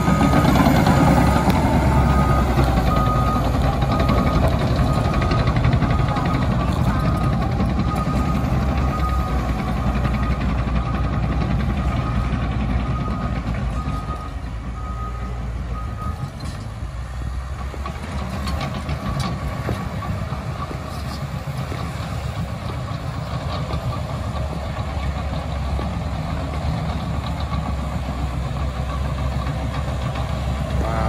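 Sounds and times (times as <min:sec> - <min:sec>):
backup alarm beeping: 0:00.0 - 0:16.3
bulldozer diesel engine running: 0:00.0 - 0:31.0.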